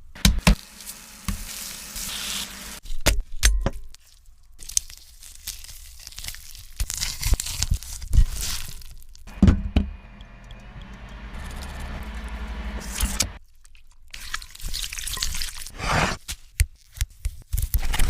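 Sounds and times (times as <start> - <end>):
steady hum: 9.3 - 13.4.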